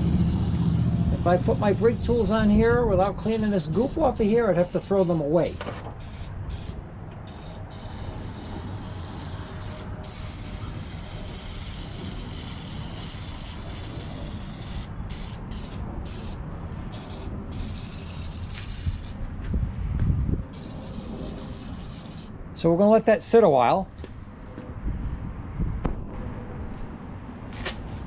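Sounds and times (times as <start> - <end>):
aerosol spray hissing: 3.2 - 16.4, 17.0 - 19.2, 20.6 - 22.3.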